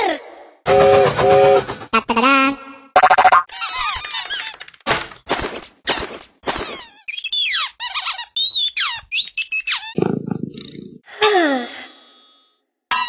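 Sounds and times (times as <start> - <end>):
low buzzing: 0.7 - 2.0.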